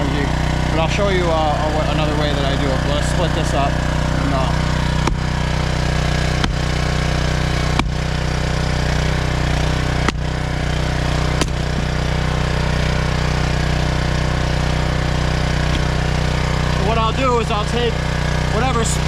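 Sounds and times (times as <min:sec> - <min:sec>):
log splitter engine running: 0:00.0 - 0:19.0
axe striking firewood: 0:04.8 - 0:05.5, 0:06.1 - 0:12.1, 0:15.6 - 0:16.0.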